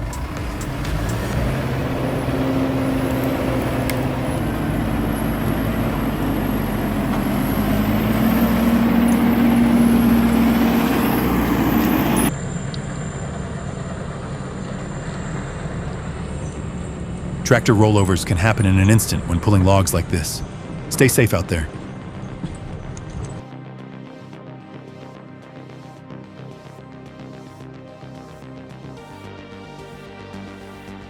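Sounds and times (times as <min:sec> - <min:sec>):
heavy engine running under load: 0:00.0 - 0:23.5
quieter engine sound: 0:00.0 - 0:23.5.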